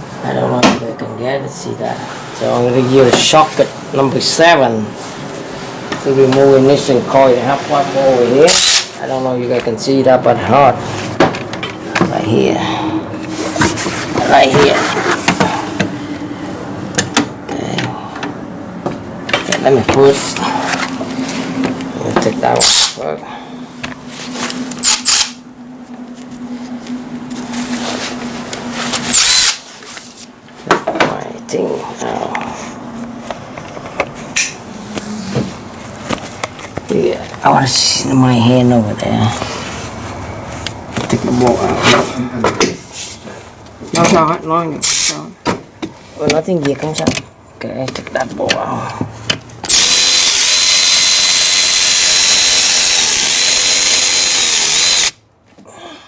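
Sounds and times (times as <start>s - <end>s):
power drill spinning: 29.0s - 29.6s, 49.7s - 55.2s.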